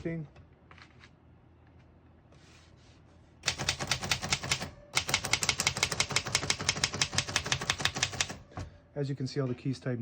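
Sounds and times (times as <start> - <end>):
typewriter keys clacking: 3.5 - 8.4.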